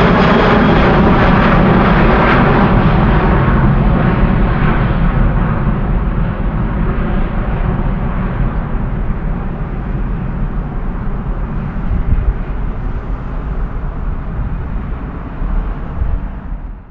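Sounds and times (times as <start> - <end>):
jet engines rumbling: 0.0 - 16.9.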